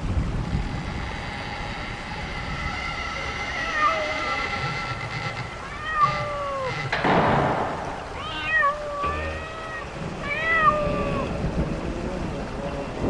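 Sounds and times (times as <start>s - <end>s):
cat meowing: 3.6s - 4.5s, 5.6s - 6.9s, 8.0s - 11.4s.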